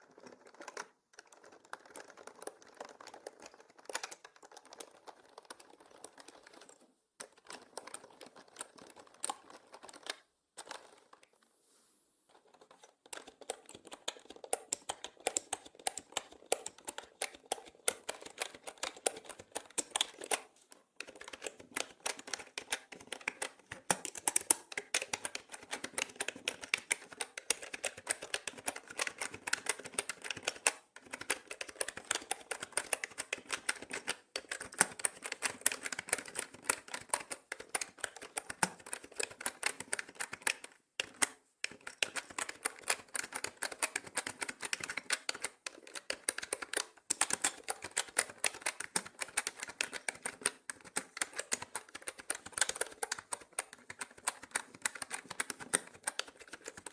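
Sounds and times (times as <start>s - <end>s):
typing on mechanical keyboard: 0.0s - 11.3s, 12.3s - 56.9s.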